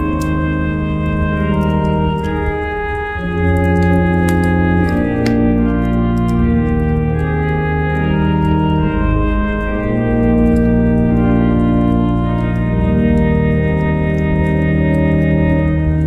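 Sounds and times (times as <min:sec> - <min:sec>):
pipe organ playing a hymn: 0:00.0 - 0:16.0.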